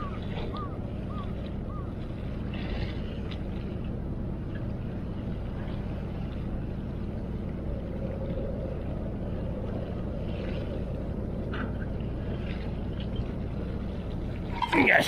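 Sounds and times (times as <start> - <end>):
boat engine droning: 0.0 - 15.0.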